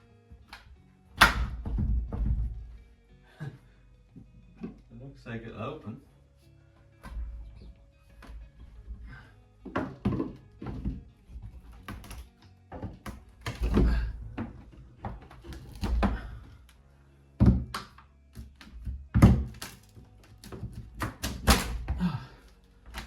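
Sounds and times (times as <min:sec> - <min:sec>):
background music: 0:00.0 - 0:23.0
wooden door knocks and thuds: 0:01.2 - 0:02.8, 0:09.6 - 0:16.4, 0:17.4 - 0:17.9, 0:18.8 - 0:19.7, 0:20.5 - 0:22.1.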